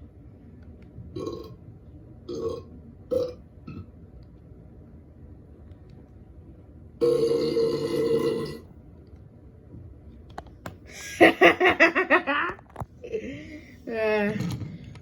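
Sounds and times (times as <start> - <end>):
person burping: 1.2 - 1.6, 7.0 - 8.7.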